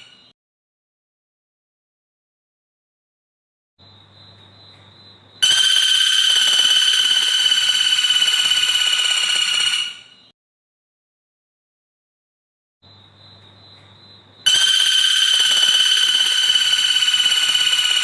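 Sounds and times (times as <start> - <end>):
faint hum: 3.8 - 5.5, 12.8 - 14.5.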